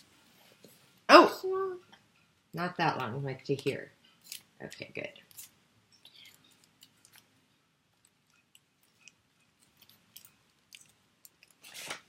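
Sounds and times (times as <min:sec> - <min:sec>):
paper and tape crinkling: 0:03.5 - 0:12.0.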